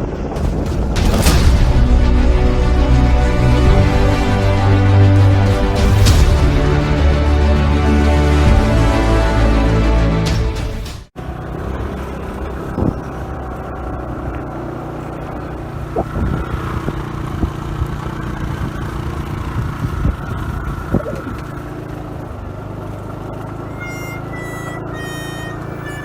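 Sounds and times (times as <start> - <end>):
car engine and road hum: 11.1 - 26.0.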